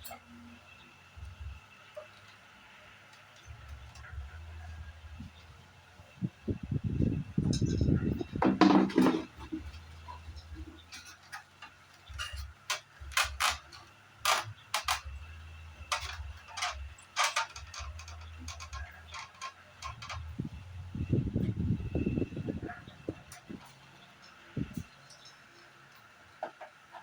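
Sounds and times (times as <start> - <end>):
low hum: 0.0 - 11.4, 12.0 - 26.0
tools clicking and tapping: 7.5 - 20.5.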